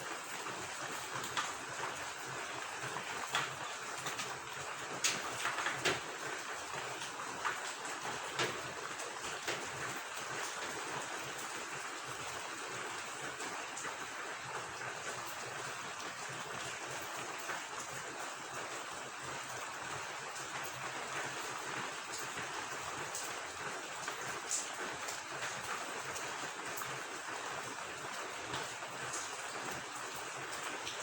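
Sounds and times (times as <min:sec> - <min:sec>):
steady rain falling: 0:00.0 - 0:31.0.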